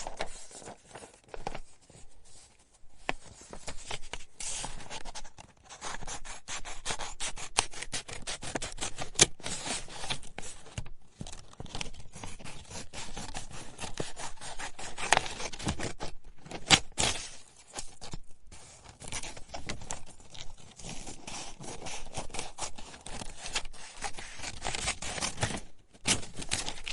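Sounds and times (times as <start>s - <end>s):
scissors cutting paper: 5.7s - 10.3s, 11.7s - 18.2s, 19.0s - 26.9s.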